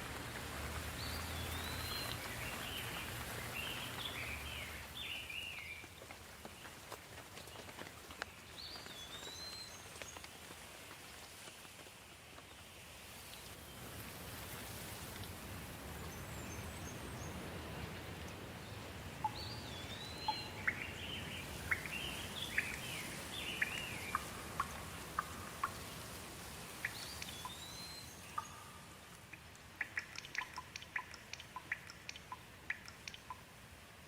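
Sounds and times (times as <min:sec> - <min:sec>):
steady rain: 0:00.0 - 0:34.0
birds singing: 0:01.0 - 0:05.8, 0:16.0 - 0:26.0, 0:26.8 - 0:29.1
sharp ticks: 0:23.6 - 0:25.9, 0:28.4 - 0:33.5.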